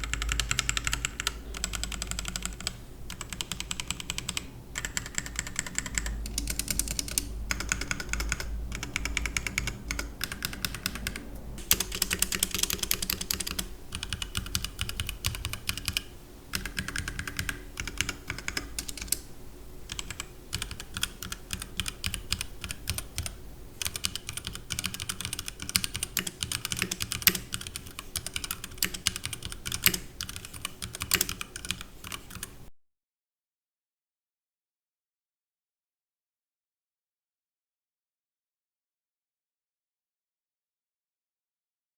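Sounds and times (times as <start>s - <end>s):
typing on mechanical keyboard: 0.0s - 19.3s, 19.9s - 32.6s.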